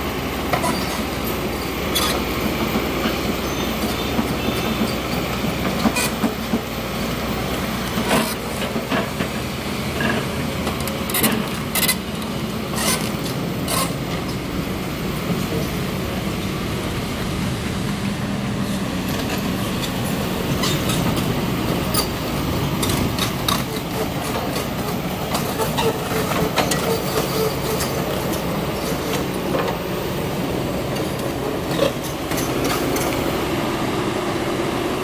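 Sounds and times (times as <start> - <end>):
excavator diesel engine running: 0.0 - 35.0.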